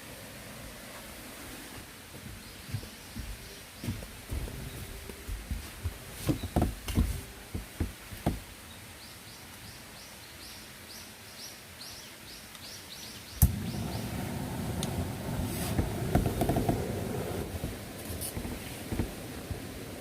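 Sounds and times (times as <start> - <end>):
knocks and thumps: 2.7 - 8.5, 15.7 - 19.8
bird chirping: 8.6 - 14.8.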